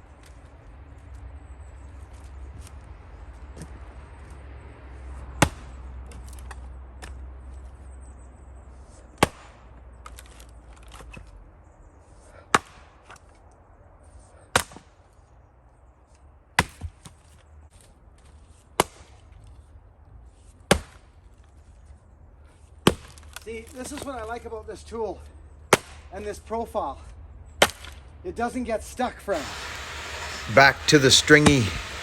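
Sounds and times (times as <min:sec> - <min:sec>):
axe chopping firewood: 0:05.4 - 0:05.7, 0:09.2 - 0:09.6, 0:12.5 - 0:13.2, 0:14.5 - 0:14.9, 0:16.6 - 0:17.2, 0:18.8 - 0:19.2, 0:20.7 - 0:21.1, 0:22.8 - 0:24.2, 0:25.7 - 0:26.1, 0:27.6 - 0:28.0.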